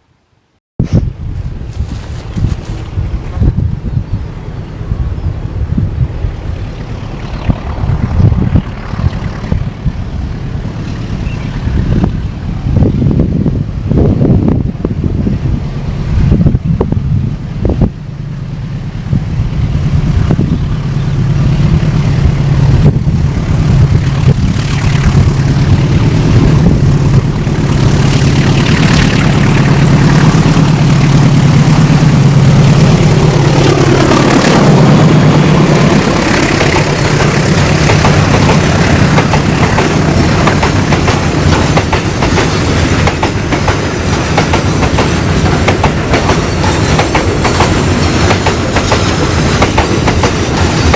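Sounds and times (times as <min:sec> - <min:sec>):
diesel locomotive engine drone: 0:00.0 - 0:50.9
train wagons clickety-clack: 0:24.0 - 0:50.9.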